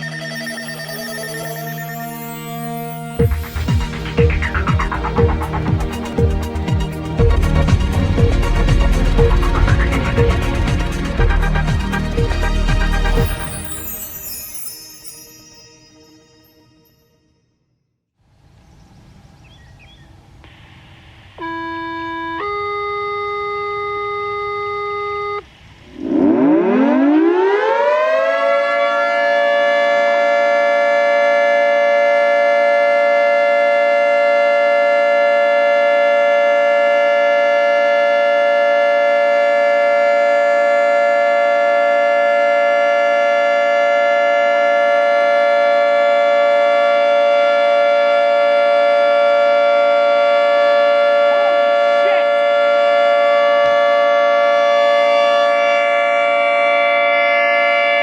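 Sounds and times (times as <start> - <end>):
warning siren chord: 0.0 - 13.8, 21.4 - 58.0
steady tone: 0.0 - 17.0.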